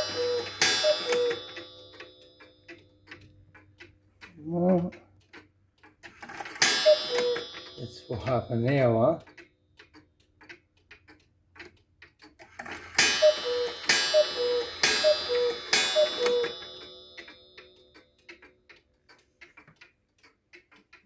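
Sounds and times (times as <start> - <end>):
two-note cuckoo calls: 0.0 - 1.9, 6.6 - 8.5, 13.0 - 17.0
clock strike ringing: 0.0 - 3.0, 6.3 - 9.2, 12.7 - 18.1
clock ticking: 0.0 - 21.0.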